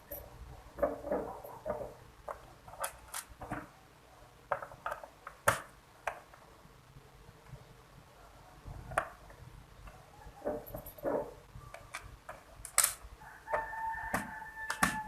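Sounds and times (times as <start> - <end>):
plastic and metal parts clicking: 0.8 - 3.7, 11.7 - 15.0.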